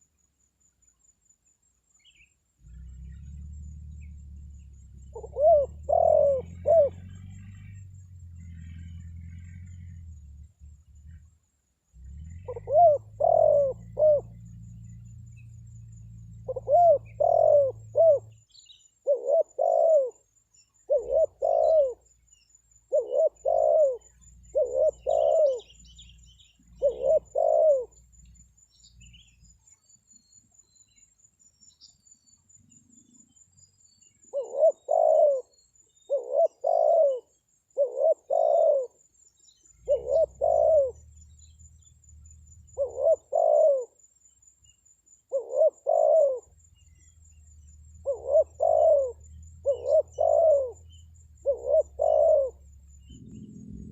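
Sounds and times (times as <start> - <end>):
dove cooing: 2.7 - 11.2, 12.0 - 18.4, 19.0 - 22.1, 22.9 - 28.0, 34.2 - 39.0, 39.8 - 44.0, 45.3 - 53.9.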